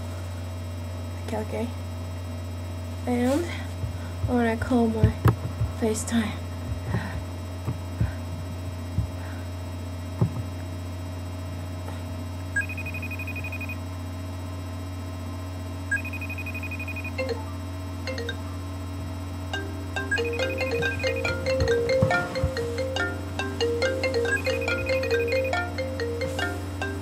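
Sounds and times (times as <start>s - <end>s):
steady electrical hum: 0.0s - 27.0s
trilling ring tone: 12.6s - 13.8s, 15.9s - 18.6s, 19.5s - 27.0s
marimba-style ringtone: 15.9s - 18.5s, 19.6s - 27.0s.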